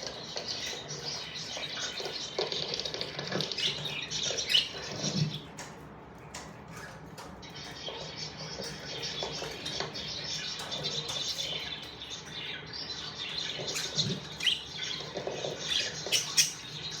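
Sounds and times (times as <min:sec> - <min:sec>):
budgerigars chattering: 0:00.0 - 0:05.5, 0:06.7 - 0:17.0
sharp bird calls: 0:06.7 - 0:17.0.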